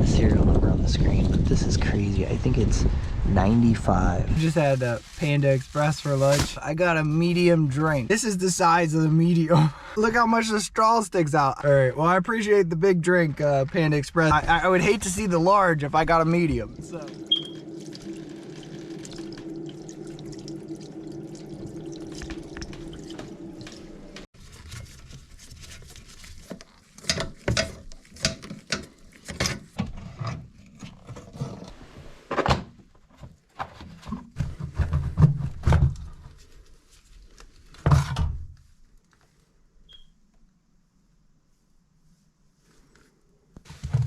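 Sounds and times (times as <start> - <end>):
steady hum: 14.6 - 24.3.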